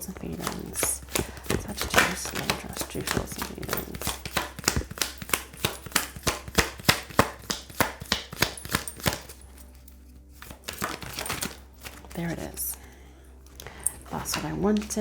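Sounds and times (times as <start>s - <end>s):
cards shuffling: 0.0s - 15.0s.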